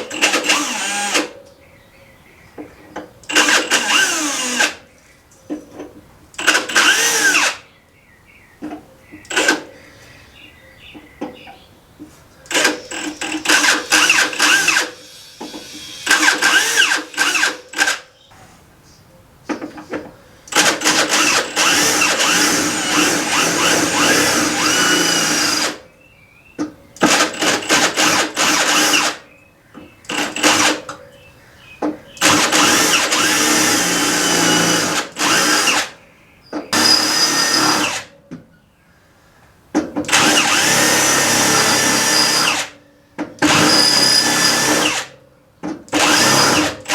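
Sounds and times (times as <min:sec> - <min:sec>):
electric drill drilling metal: 0:00.0 - 0:01.3, 0:03.3 - 0:04.8, 0:06.4 - 0:07.6, 0:12.5 - 0:18.0, 0:20.5 - 0:25.8, 0:27.0 - 0:29.2, 0:30.1 - 0:30.8, 0:32.2 - 0:36.0, 0:36.8 - 0:38.1, 0:40.1 - 0:42.7, 0:43.4 - 0:45.1, 0:45.9 - 0:46.9.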